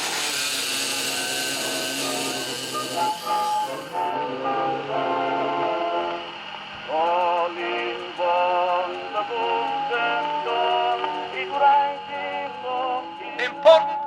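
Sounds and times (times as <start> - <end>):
low drone: 0.0 - 13.4
sung or synthesised melody: 3.5 - 6.4
light ticking beat: 6.9 - 14.0.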